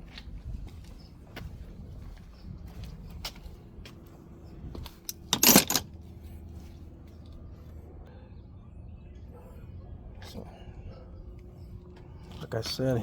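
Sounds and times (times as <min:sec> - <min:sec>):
small metal parts clattering: 0:04.9 - 0:05.8.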